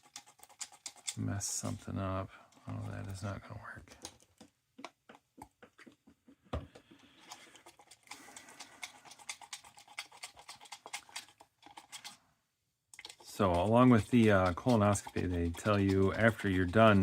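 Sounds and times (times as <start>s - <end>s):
faint clicks and taps: 2.5s - 7.4s.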